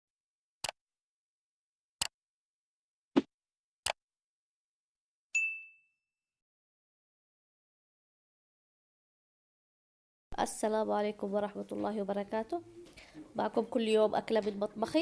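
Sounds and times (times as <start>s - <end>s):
bright ding: 5.4s - 6.0s.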